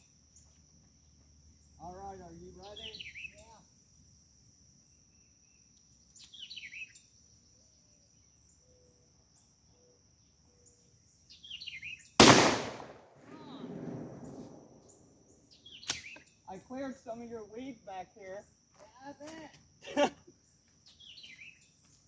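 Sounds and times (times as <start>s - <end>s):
high insect trill: 0.0s - 22.0s
bird chirping: 1.6s - 3.6s, 4.9s - 12.2s, 14.2s - 16.6s, 20.4s - 21.9s
shotgun shot: 12.2s - 14.6s.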